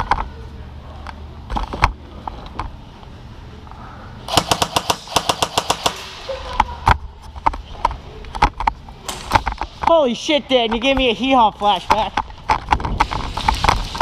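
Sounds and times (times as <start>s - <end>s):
airsoft guns firing: 4.3s - 6.4s.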